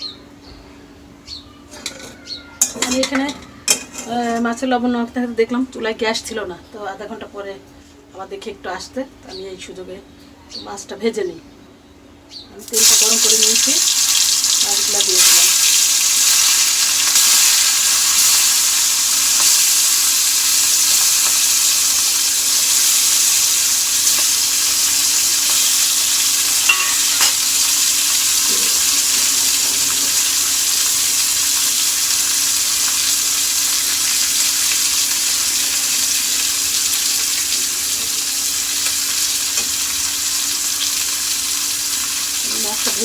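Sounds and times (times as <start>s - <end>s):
fish sizzling in oil: 12.6s - 43.0s.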